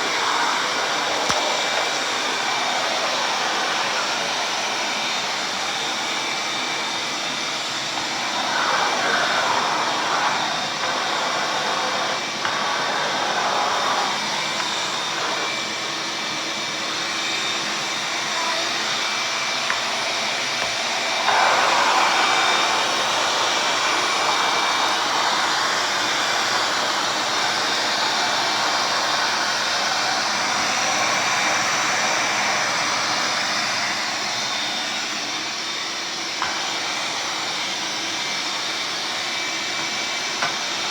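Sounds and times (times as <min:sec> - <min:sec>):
shop vacuum motor whine: 0:00.0 - 0:40.9
air rushing through hose: 0:07.9 - 0:15.7.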